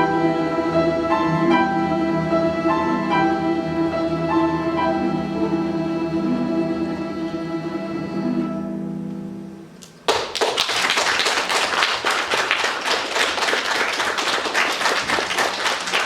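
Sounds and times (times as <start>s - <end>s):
audience applause: 10.1s - 16.0s.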